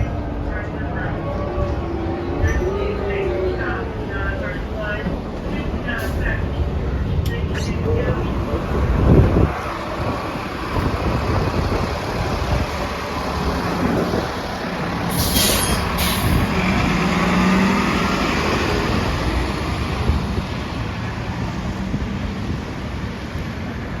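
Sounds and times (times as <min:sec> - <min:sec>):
bus engine and road drone: 0:00.0 - 0:24.0
air brake hisses: 0:15.1 - 0:16.5.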